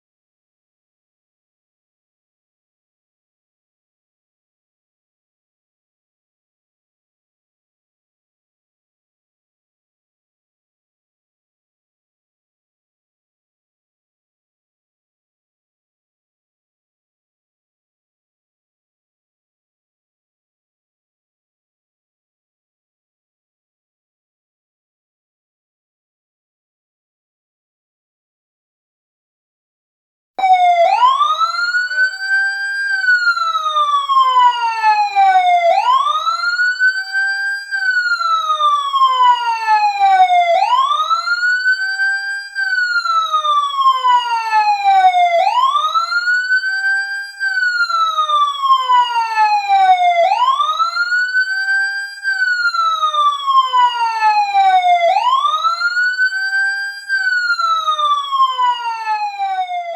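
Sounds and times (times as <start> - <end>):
fire truck siren wailing: 30.4 - 59.9.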